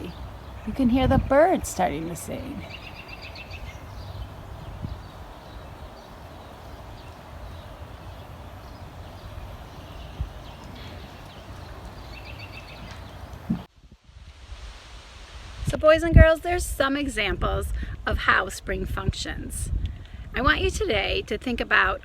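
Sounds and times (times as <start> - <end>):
songbirds singing: 0.0 - 13.7.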